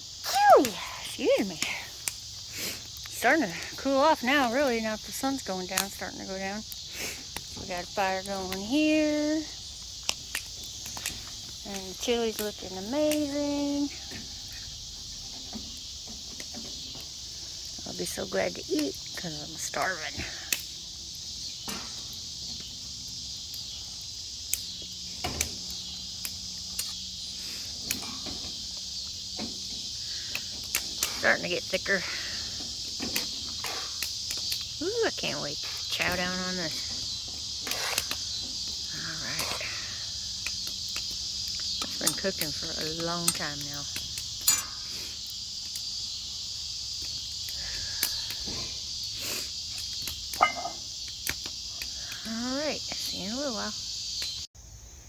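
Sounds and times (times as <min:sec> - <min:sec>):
campfire snapping and popping: 0:00.0 - 0:54.5
crickets chirping: 0:00.0 - 0:55.0.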